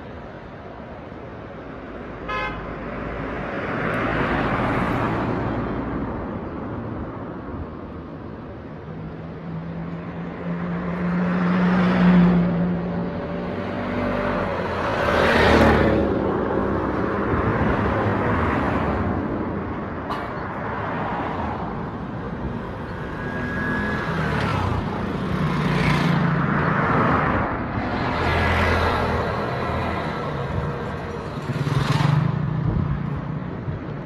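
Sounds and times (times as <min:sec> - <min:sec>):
vehicles passing: 0:00.0 - 0:34.0.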